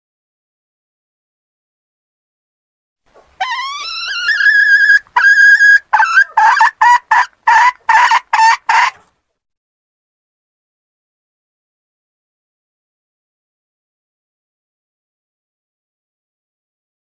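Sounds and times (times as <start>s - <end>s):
hen calling and cackling: 3.1s - 9.1s.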